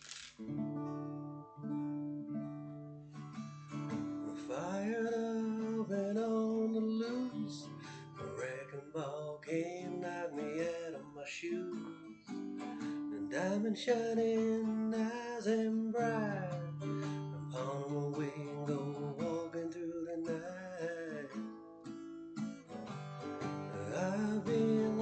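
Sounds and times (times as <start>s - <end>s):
acoustic guitar playing slow song: 0.0s - 25.0s
person singing: 4.3s - 21.5s, 23.6s - 25.0s.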